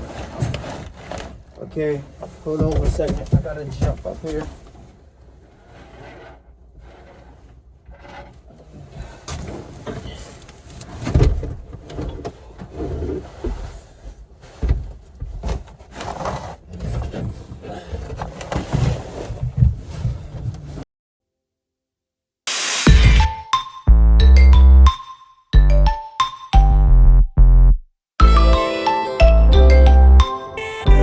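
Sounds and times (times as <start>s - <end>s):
thumps and scrapes on plywood: 10.9s - 20.8s.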